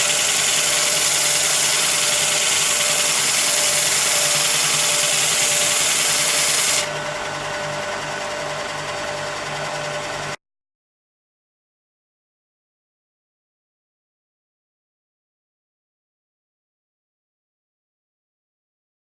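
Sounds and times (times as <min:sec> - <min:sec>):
belt sander hissing: 0:00.0 - 0:07.0
sander motor hum: 0:00.0 - 0:10.4.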